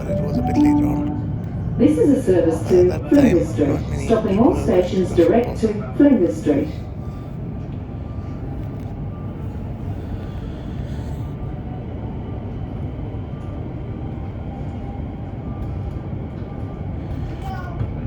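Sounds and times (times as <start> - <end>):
faint high tone: 0.0 - 1.9
train rumble inside carriage: 0.0 - 18.0.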